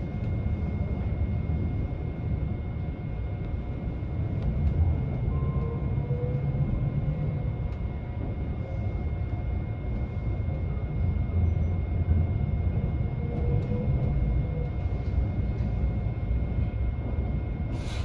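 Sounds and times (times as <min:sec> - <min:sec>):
train cabin low rumble: 0:00.0 - 0:18.0.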